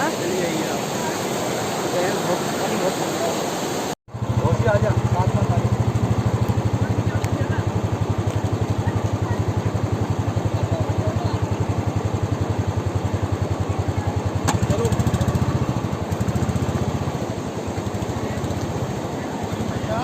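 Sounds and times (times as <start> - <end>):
river water rushing: 0.0 - 20.0
motorcycle engine idling: 4.1 - 20.0.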